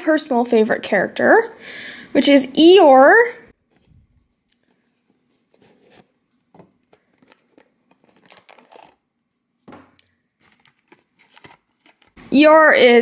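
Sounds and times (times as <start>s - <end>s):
toy box rustling and crinkling: 3.6s - 9.1s, 10.4s - 12.4s.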